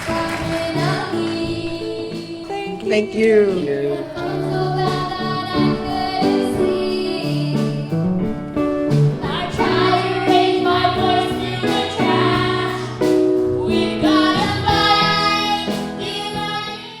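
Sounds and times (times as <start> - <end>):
instrumental accompaniment with bass: 0.0 - 17.0
person singing: 0.6 - 7.9.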